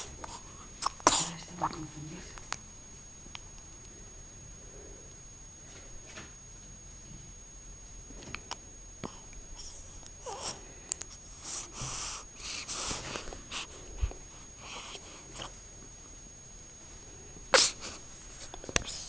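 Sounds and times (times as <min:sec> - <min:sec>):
sneeze: 0:00.8 - 0:01.4, 0:17.5 - 0:17.8.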